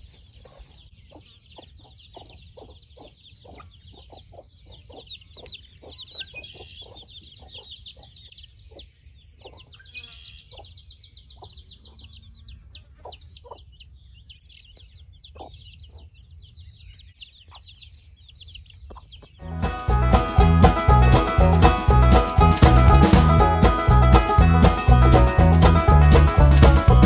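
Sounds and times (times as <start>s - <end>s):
chickens clucking: 0.0s - 27.0s
fast high chirping trills: 1.8s - 8.4s.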